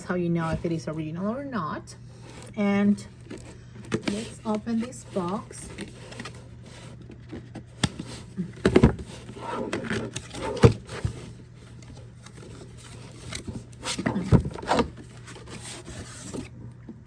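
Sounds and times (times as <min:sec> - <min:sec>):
cardboard box rubbing and scraping: 0:12.4 - 0:16.6.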